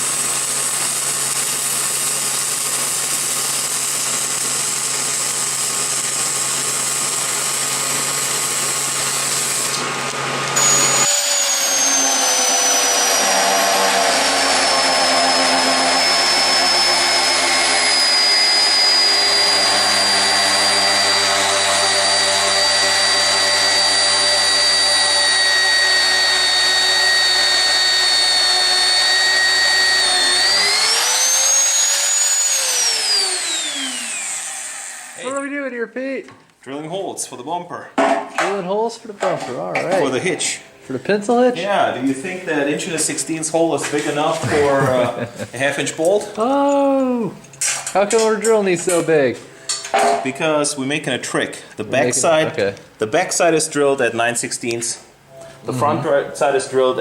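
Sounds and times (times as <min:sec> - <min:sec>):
electric drill drilling steel: 0:00.0 - 0:35.4.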